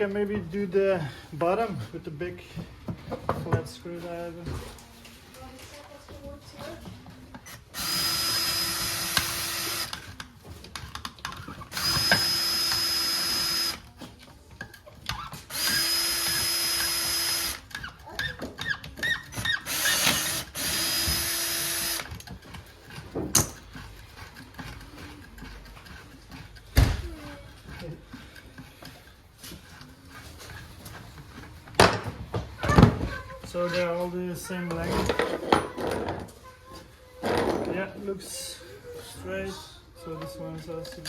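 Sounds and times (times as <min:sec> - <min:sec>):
power drill backing out screws: 0:07.4 - 0:10.1, 0:11.4 - 0:13.9, 0:15.0 - 0:17.9, 0:18.6 - 0:22.3.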